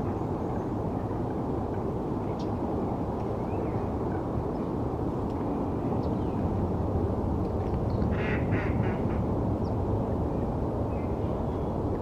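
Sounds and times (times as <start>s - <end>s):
distant city traffic rumble: 0.0s - 12.0s.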